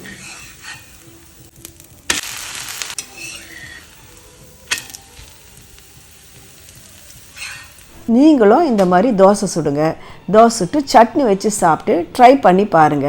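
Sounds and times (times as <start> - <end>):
food sizzling on a hot griddle: 0.0 - 8.1.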